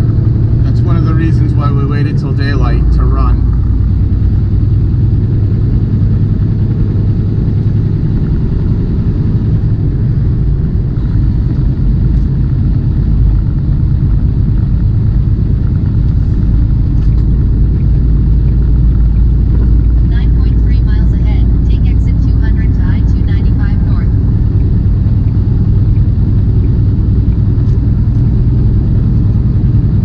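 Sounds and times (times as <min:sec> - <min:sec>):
diesel engine drone: 0:00.0 - 0:30.0
road noise: 0:00.0 - 0:30.0.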